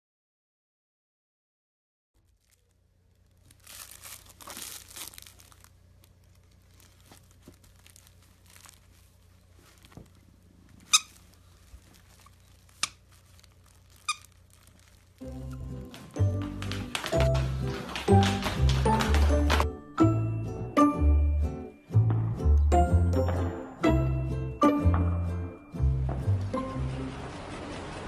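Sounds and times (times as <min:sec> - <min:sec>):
faint low hum: 0:02.2 - 0:17.8
crinkling and rustling: 0:02.2 - 0:19.7.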